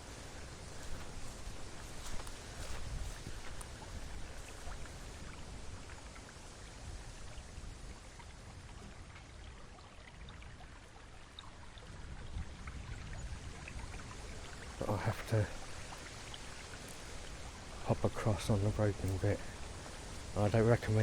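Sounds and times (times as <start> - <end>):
river water rushing: 0.0 - 8.6, 13.9 - 21.0
wind rumbling on microphone: 0.0 - 10.8, 11.4 - 21.0.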